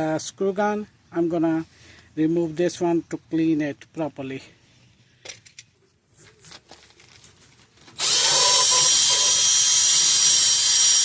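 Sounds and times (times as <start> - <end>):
drill spinning wire brush: 8.0 - 11.0.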